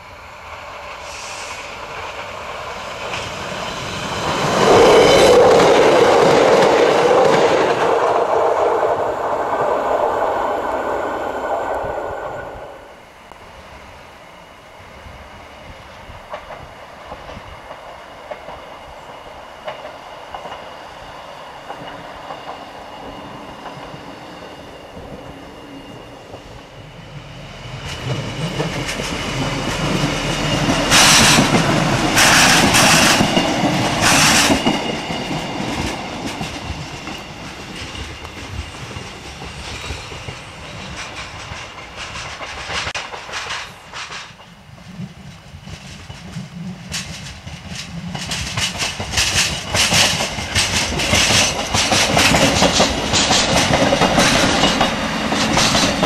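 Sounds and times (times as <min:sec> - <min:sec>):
train wheels clattering over points: 0:27.8 - 0:56.0.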